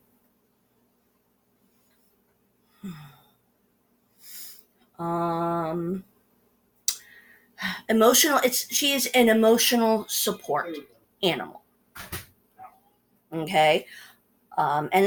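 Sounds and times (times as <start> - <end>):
woman breathing: 4.2 - 4.7, 7.0 - 7.9, 13.8 - 14.2.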